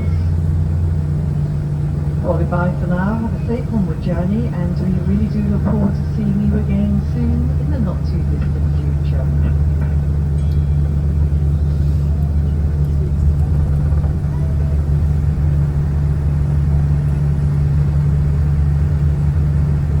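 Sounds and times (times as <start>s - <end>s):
airplane cabin drone: 0.0s - 20.0s.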